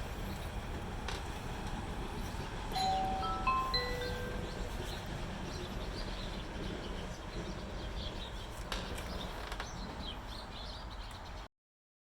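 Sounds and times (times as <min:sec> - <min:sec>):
small birds chirping: 0:03.8 - 0:11.5.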